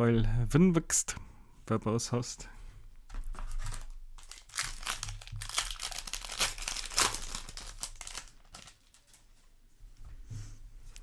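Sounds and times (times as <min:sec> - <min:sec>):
foil wrapper crinkling and tearing: 0:03.3 - 0:09.3.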